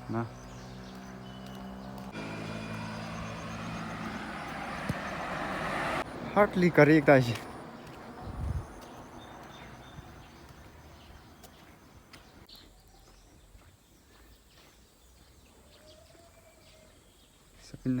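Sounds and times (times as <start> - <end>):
small bird chirps: 0.0 - 2.1, 7.8 - 17.5
background noise: 6.0 - 18.0.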